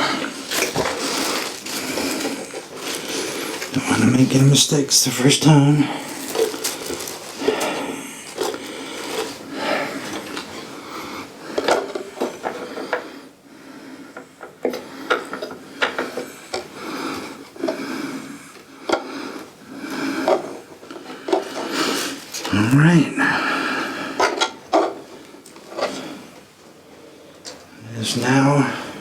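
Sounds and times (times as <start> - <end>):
hands rubbing and scraping parts: 0.0 - 5.0, 6.0 - 13.4.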